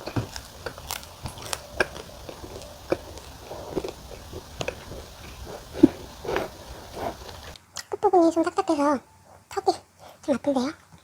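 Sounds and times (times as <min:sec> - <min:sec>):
crunching pizza crust: 0:00.0 - 0:07.6
wet mouth chewing sounds: 0:00.0 - 0:07.6.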